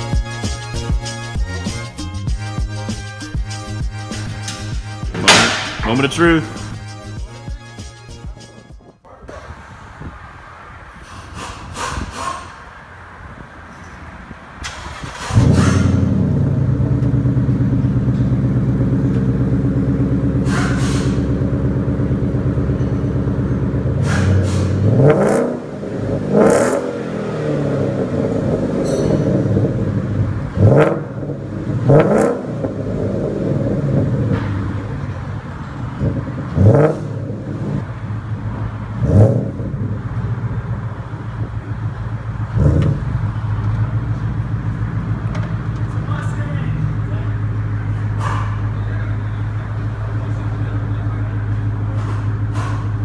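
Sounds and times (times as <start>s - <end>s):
car engine starting: 0.0s - 53.0s
engine revving: 14.6s - 48.7s
car engine idling: 14.6s - 53.0s.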